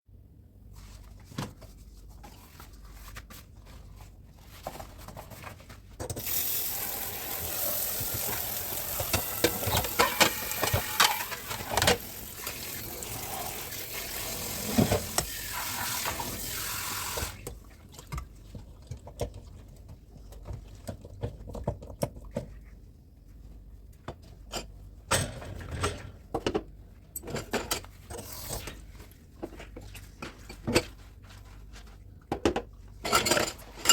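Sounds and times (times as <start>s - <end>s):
tap water splashing into sink: 6.2s - 17.5s
dishes and utensils clinking: 8.0s - 12.0s.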